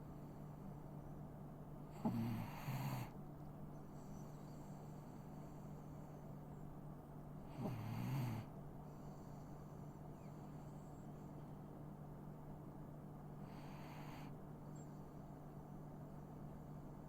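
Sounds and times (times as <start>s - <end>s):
dog snoring: 1.9s - 3.2s, 7.5s - 9.5s, 13.4s - 14.4s
dog breathing: 13.4s - 15.2s.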